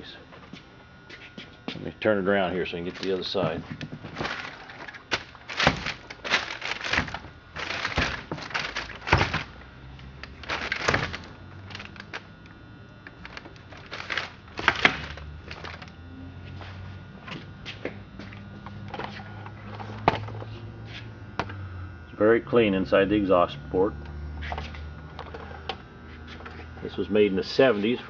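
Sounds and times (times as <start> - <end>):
chainsaw knocking and scraping: 2.8 - 12.4, 13.0 - 16.0.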